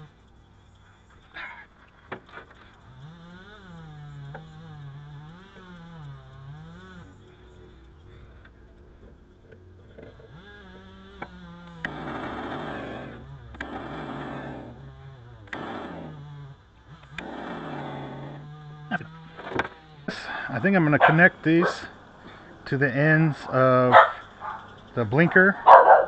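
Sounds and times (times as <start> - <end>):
man humming a tune: 18.7 - 19.2.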